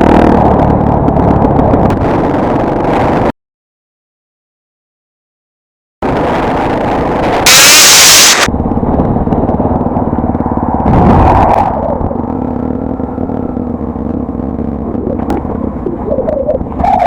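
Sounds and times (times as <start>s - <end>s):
motorcycle engine running: 7.0s - 17.0s.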